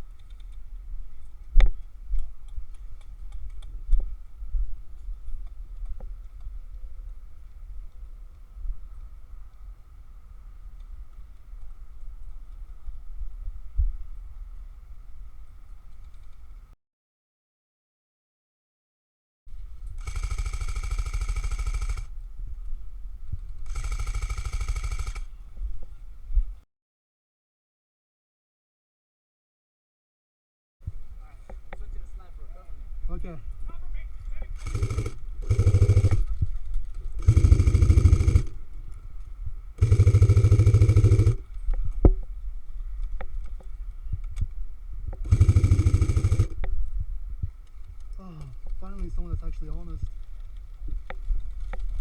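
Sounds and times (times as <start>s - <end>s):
airsoft gun full-auto bursts: 20.0s - 22.2s, 23.6s - 25.4s, 34.6s - 36.5s, 37.1s - 38.6s, 39.8s - 41.6s, 45.2s - 46.6s
faint steady whine: 30.9s - 52.0s
motor whine: 34.6s - 38.9s, 39.8s - 41.7s, 45.1s - 46.7s
sharp clicks and knocks: 39.8s - 42.3s, 45.1s - 46.7s.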